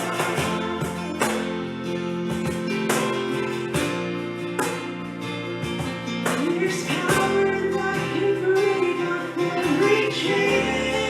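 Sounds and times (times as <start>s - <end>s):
person singing: 0.0s - 3.0s, 6.2s - 11.0s
strummed acoustic guitar: 0.0s - 11.0s.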